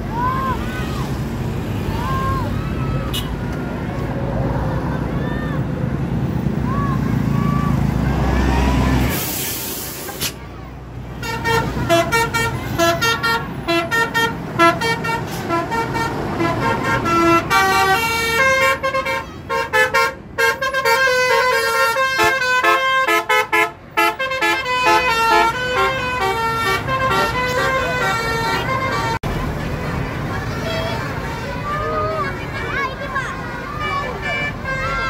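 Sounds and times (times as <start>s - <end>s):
engine and traffic rumble: 0.0s - 35.0s
bus musical horn melody: 11.2s - 29.3s.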